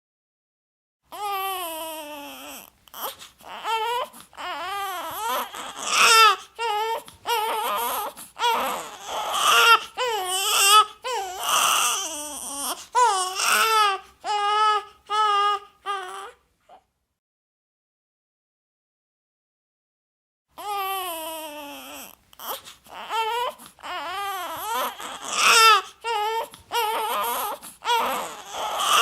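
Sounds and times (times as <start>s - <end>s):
infant crying: 1.1s - 16.9s, 20.6s - 29.0s
gasping breaths: 7.9s - 10.3s, 24.9s - 29.0s.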